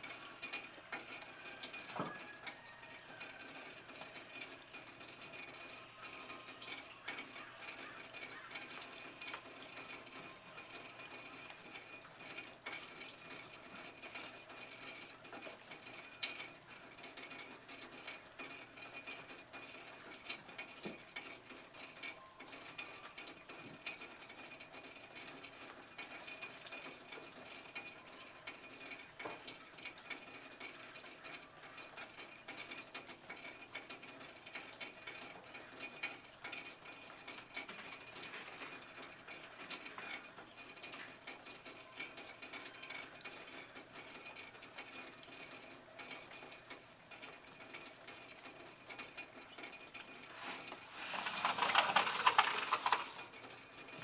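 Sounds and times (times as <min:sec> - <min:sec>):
faint crackling: 0:50.2 - 0:53.3.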